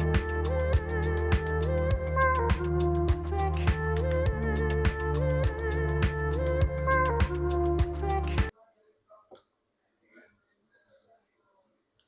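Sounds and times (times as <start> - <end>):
background music with steady beat: 0.0 - 8.5.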